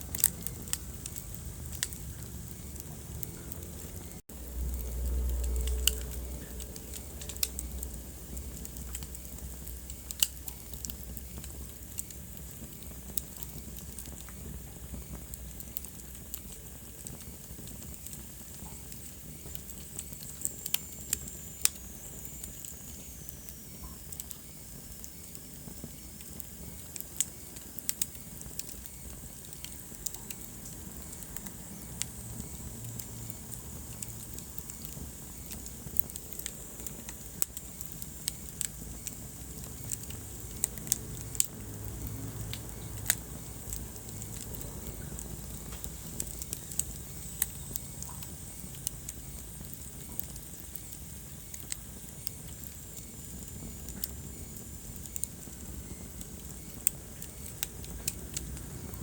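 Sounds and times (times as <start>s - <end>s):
fire crackling and popping: 0.0s - 59.0s
wood fire burning: 0.0s - 59.0s.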